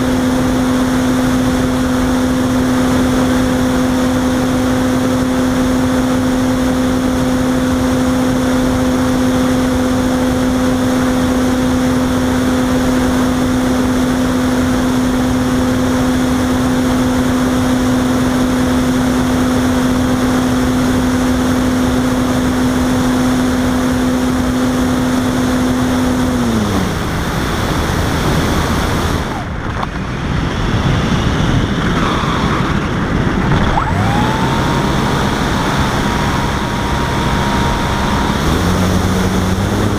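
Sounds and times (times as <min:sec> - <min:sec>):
electric motor whine: 0:18.8 - 0:30.0, 0:31.7 - 0:39.9.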